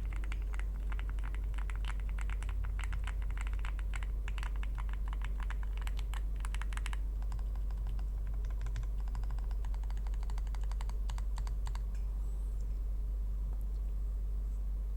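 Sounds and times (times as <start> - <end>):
typing on mechanical keyboard: 0.0 - 11.8.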